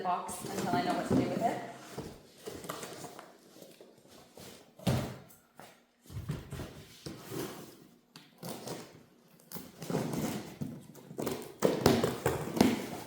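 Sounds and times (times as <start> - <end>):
cardboard and packing rustling: 0.3 - 8.9.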